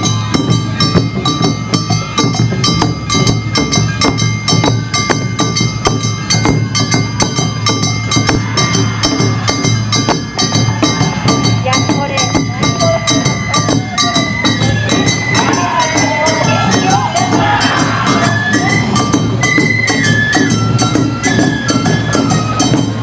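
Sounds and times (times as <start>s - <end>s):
fast steady percussion: 0.0s - 23.0s
sustained high tones: 0.0s - 23.0s.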